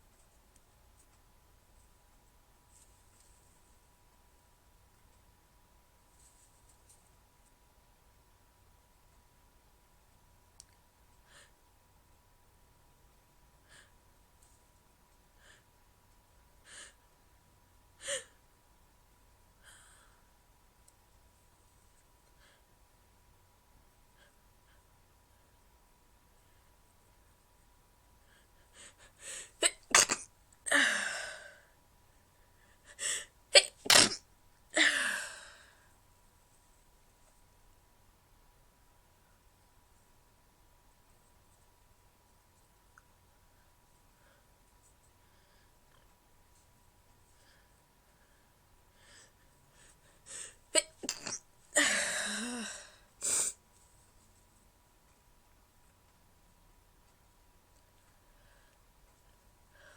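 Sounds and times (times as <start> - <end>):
woman stifling sneezes: 29.6 - 30.9, 33.6 - 34.2, 50.8 - 52.5.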